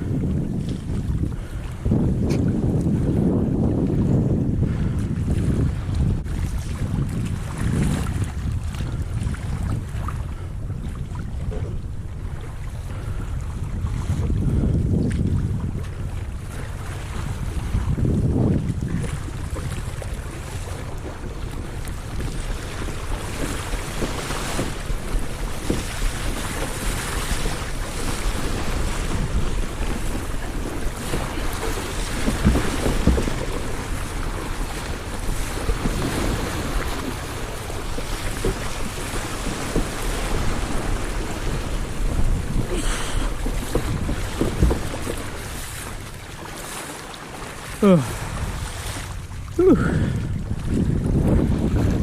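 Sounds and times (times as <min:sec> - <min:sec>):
water splashing along kayak hull: 0:00.0 - 0:52.0
wind rumbling on microphone: 0:00.0 - 0:52.0.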